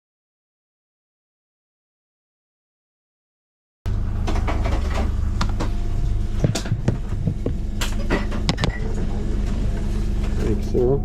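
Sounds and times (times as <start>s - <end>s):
low mechanical hum: 3.9s - 11.0s.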